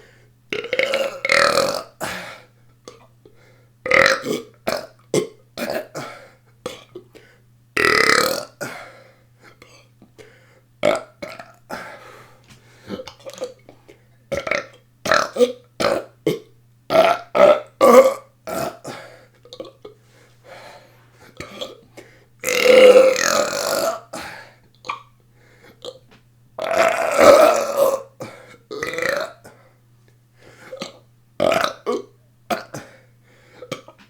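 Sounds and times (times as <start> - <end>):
person burping: 0.5 - 2.3, 3.9 - 7.0, 7.8 - 8.8, 10.8 - 11.9, 12.9 - 13.6, 14.3 - 20.0, 21.4 - 21.8, 22.4 - 25.0, 26.6 - 29.6, 30.7 - 32.9, 33.6 - 34.0.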